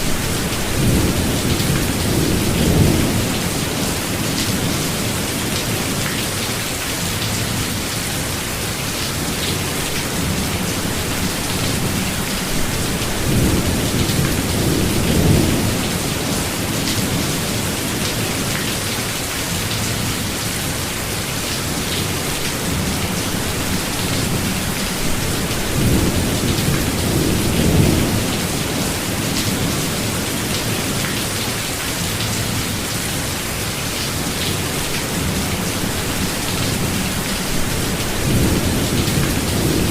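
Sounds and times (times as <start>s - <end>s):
steady rain in forest: 0.0s - 39.9s
low rolls of thunder: 11.4s - 17.3s.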